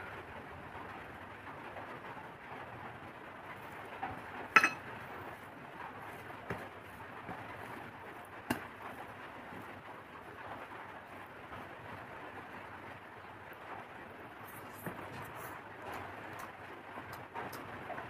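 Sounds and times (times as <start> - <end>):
dishes clinking: 4.6 - 4.8.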